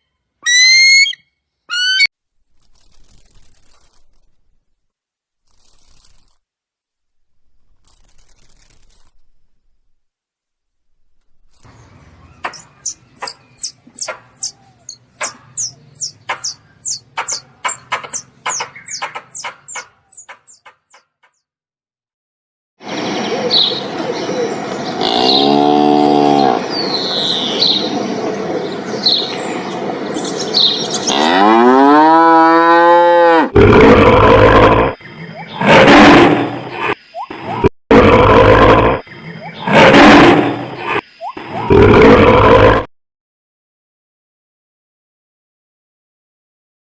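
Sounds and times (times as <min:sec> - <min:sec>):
birds chirping: 0:00.0 - 0:02.1, 0:11.6 - 0:21.4, 0:22.8 - 0:32.9, 0:34.8 - 0:37.6, 0:38.9 - 0:41.9
cattle mooing: 0:25.0 - 0:26.7, 0:31.0 - 0:34.7.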